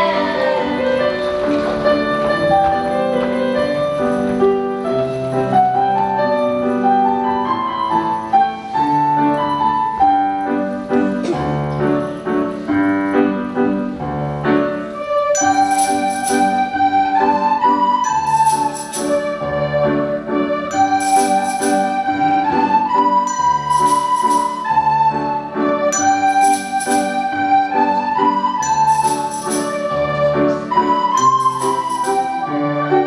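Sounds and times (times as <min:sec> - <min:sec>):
percussion shaker: 0:00.0 - 0:13.2, 0:15.2 - 0:19.9, 0:20.7 - 0:22.6, 0:23.2 - 0:25.0, 0:25.9 - 0:27.8, 0:28.5 - 0:32.5
recorder ensemble playing: 0:14.9 - 0:33.0.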